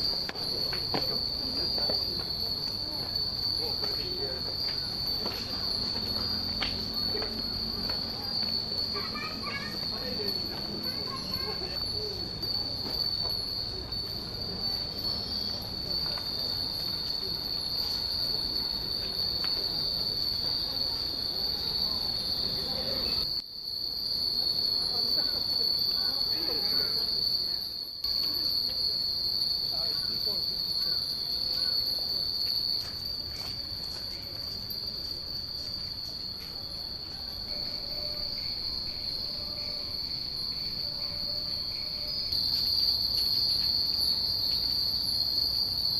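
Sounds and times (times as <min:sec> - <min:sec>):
wind chimes tinkling: 0:00.0 - 0:23.3, 0:23.9 - 0:45.8
murmur of people: 0:00.0 - 0:23.4
high-pitched insect drone: 0:00.0 - 0:45.9.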